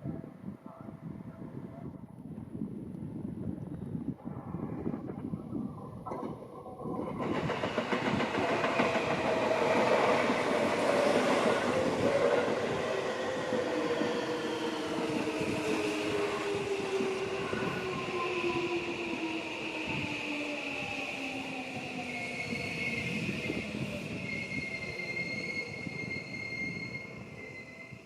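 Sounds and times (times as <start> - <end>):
train wheel clatter: 6.1 - 12.8.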